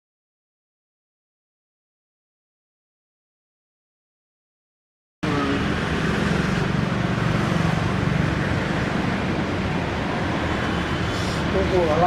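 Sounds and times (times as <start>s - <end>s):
loud background din with hum: 5.2s - 12.0s.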